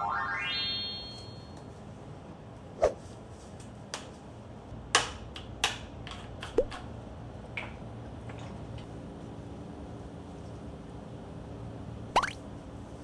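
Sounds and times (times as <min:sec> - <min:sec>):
short rising bloop: 0:00.0 - 0:01.2, 0:12.2 - 0:12.4.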